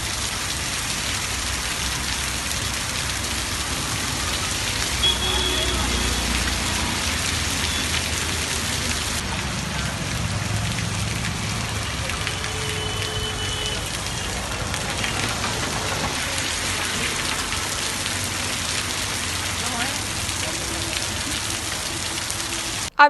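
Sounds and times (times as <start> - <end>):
heavy rain on hard surfaces: 0.0 - 22.9.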